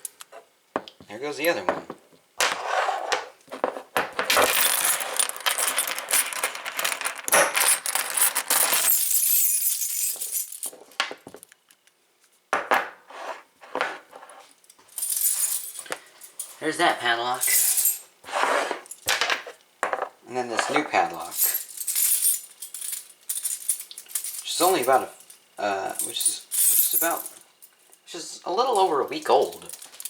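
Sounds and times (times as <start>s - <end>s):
padlocks and keys clinking: 4.3s - 10.9s, 21.2s - 28.0s, 28.8s - 30.0s.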